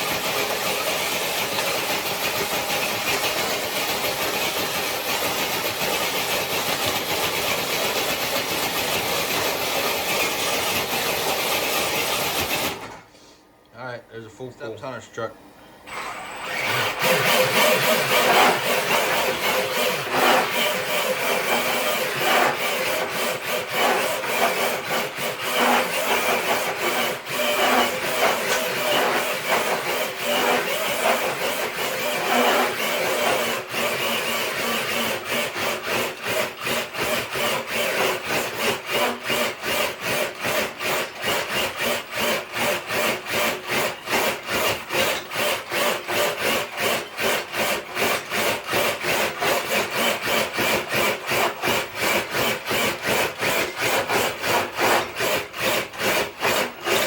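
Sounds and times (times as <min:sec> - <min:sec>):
toy truck drivetrain whirring: 0:15.9 - 0:57.0.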